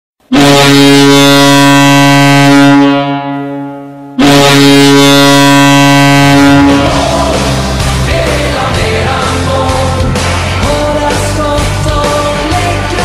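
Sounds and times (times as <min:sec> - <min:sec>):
arena goal horn blasts: 0:00.3 - 0:07.0.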